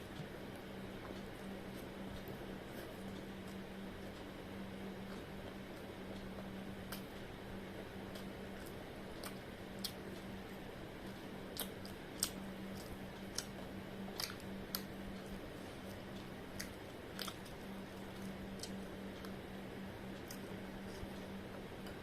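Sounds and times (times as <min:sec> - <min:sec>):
steady low hum: 0:00.0 - 0:22.0
person chewing crunchy food: 0:08.0 - 0:19.4.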